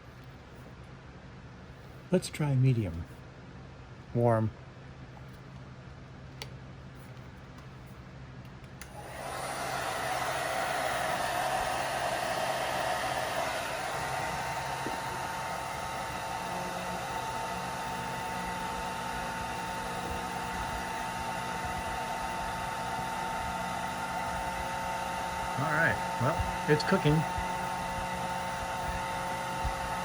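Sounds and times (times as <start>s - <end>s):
steady whine: 8.7s - 30.0s
dryer blowing air: 8.8s - 30.0s.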